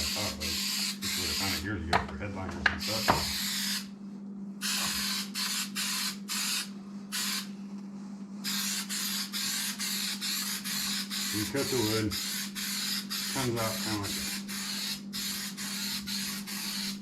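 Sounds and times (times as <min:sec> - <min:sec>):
aerosol can spraying: 0:04.6 - 0:07.5, 0:08.5 - 0:17.0.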